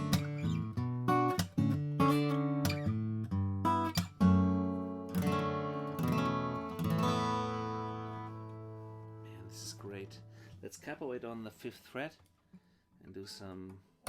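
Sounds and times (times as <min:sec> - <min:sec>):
acoustic guitar strummed: 0:00.0 - 0:10.5.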